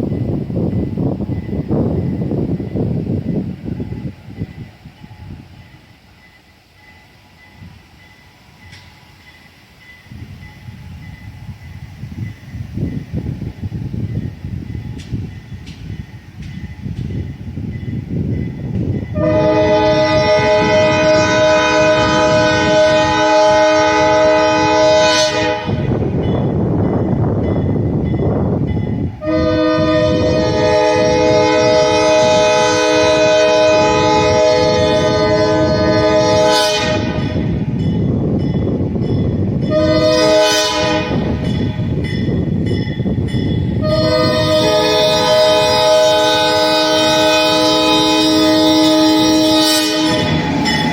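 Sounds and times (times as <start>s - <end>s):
locomotive air horn blast: 19.2s - 26.0s, 29.2s - 37.6s, 39.7s - 41.4s, 43.8s - 50.9s.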